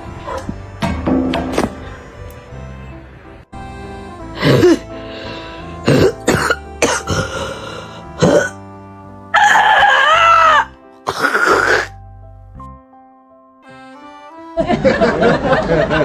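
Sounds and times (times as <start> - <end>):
background music: 0.0 - 16.0
animal coughing and retching: 5.8 - 7.4, 8.2 - 8.6, 11.0 - 11.9.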